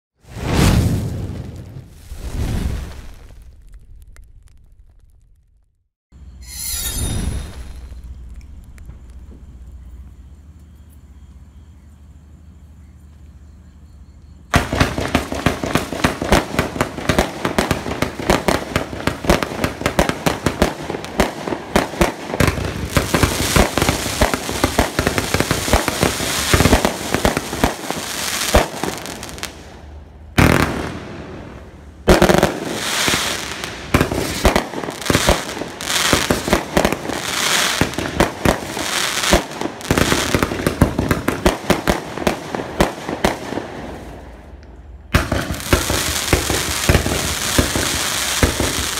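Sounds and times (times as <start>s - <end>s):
fireworks barrage with crackling: 0.2s - 5.7s, 14.5s - 48.9s.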